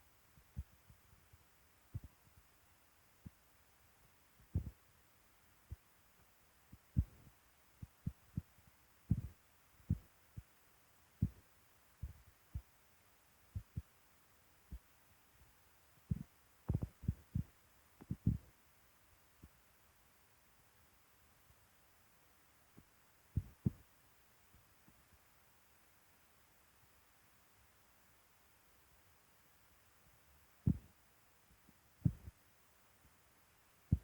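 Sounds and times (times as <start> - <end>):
faint steady hiss: 0.0 - 34.0
dull low thumps: 4.5 - 4.8, 9.1 - 9.3, 16.1 - 18.5, 23.4 - 23.8, 32.0 - 32.3.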